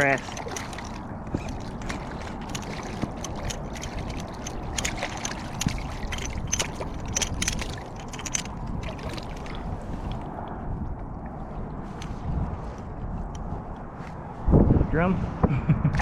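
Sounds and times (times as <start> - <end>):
water splashing against kayak hull: 0.0 - 12.2
steady low rumble: 0.0 - 16.0
small irregular clicks: 0.2 - 10.6.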